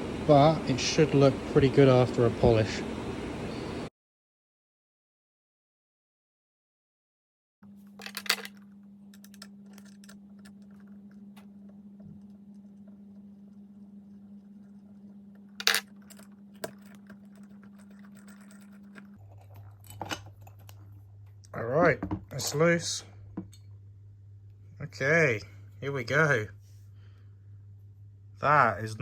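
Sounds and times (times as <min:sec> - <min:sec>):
steady low hum: 0:00.0 - 0:03.9, 0:07.6 - 0:29.0
metal tools clinking on steel: 0:08.0 - 0:10.9, 0:15.6 - 0:20.9.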